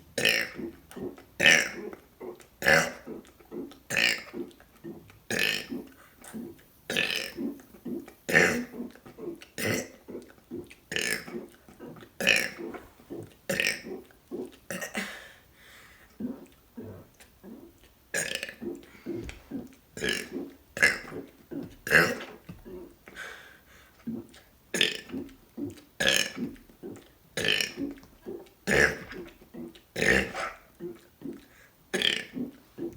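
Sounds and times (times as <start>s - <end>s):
person burping: 0.2s - 0.6s, 9.6s - 10.2s, 13.5s - 13.9s, 14.7s - 15.3s, 18.2s - 23.4s, 30.0s - 32.9s.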